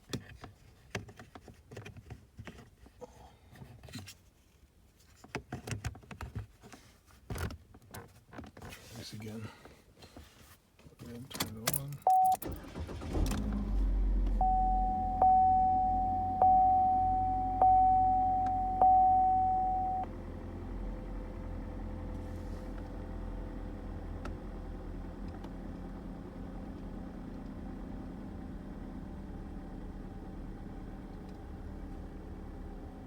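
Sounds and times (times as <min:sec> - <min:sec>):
car engine starting and idling: 0:11.4 - 0:33.0
car warning chime: 0:12.0 - 0:13.1, 0:14.4 - 0:20.1.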